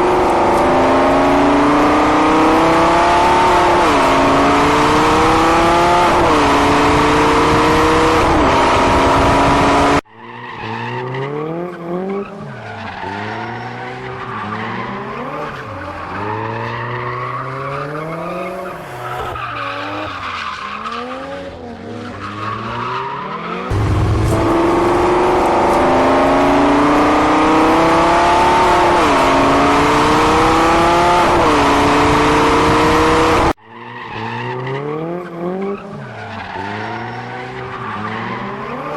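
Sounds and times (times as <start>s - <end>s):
race car engine revving: 0.0s - 10.0s, 23.6s - 33.6s.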